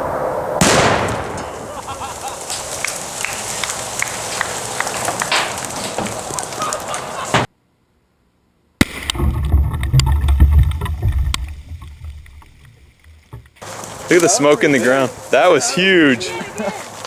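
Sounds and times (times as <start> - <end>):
explosion crack and rumble: 0.0 - 7.5, 8.8 - 12.7.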